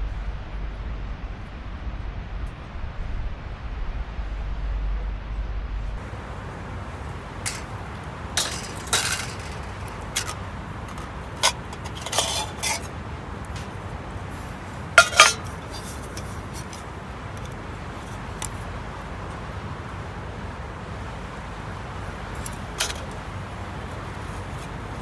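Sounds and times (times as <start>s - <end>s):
cookware clinking and clattering: 6.0s - 18.6s, 22.4s - 23.2s.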